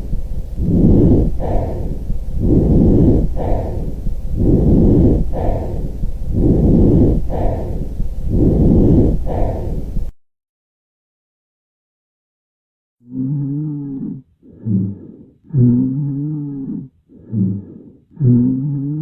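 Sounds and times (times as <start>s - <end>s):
breathing through stethoscope: 0.0s - 10.1s, 14.0s - 19.0s.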